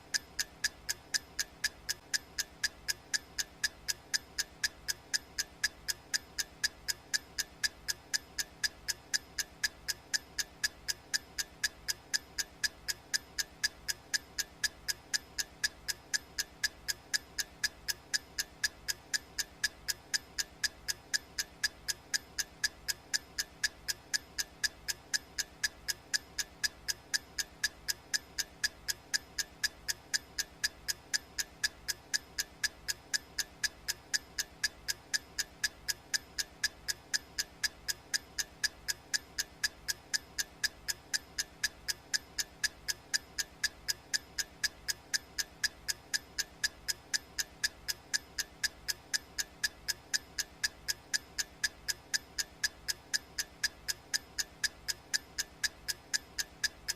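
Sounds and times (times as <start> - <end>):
clock ticking: 0.0 - 56.9.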